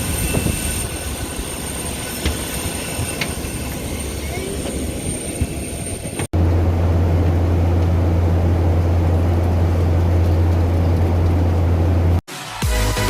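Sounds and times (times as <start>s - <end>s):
jet engine drone in cabin: 6.1s - 12.2s
music: 12.3s - 13.0s.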